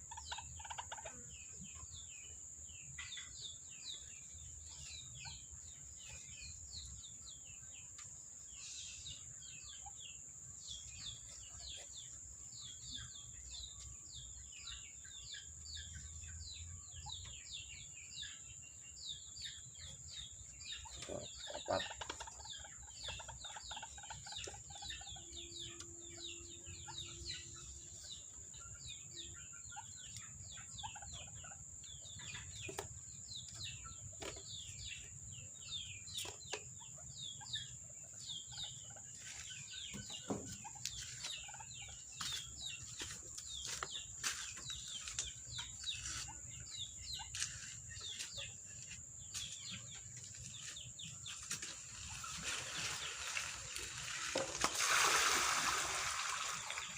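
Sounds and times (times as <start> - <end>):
bird clucking: 0.0 - 1.3, 20.8 - 25.9
birds chirping: 0.0 - 56.9.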